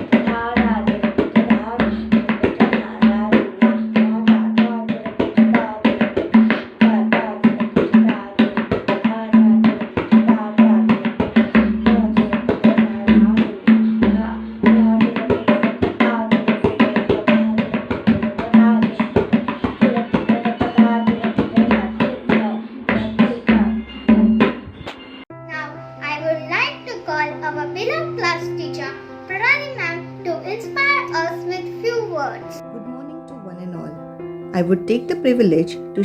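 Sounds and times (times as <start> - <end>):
tabla playing fast strokes: 0.0 - 24.8.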